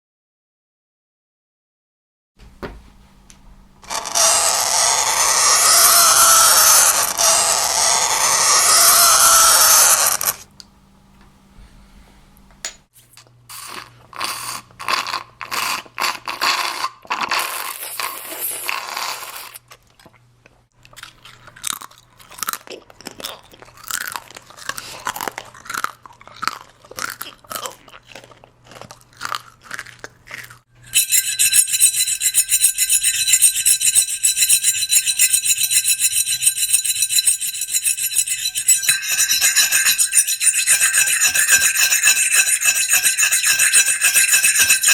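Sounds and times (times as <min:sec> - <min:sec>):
chalk screeching on blackboard: 0:30.9 - 0:44.9
cutlery scraping on a plate: 0:30.9 - 0:44.9.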